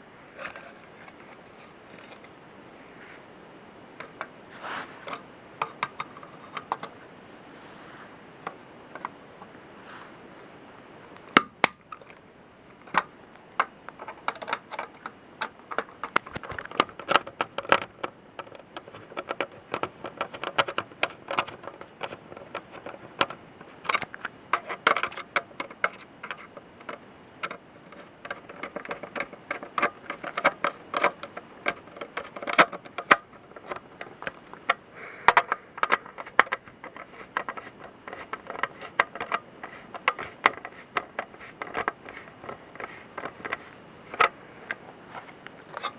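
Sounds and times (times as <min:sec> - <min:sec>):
smoke detector housing clicks and taps: 0:12.8 - 0:44.8.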